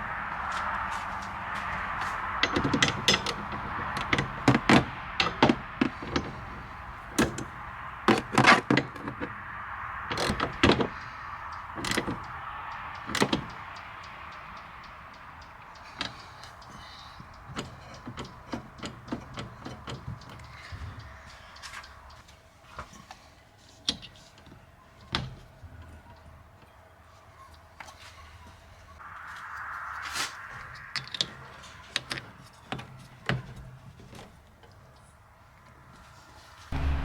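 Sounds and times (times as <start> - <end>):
tools clicking and knocking on metal: 2.2 - 9.4, 10.1 - 22.0
steady hiss: 29.0 - 32.4.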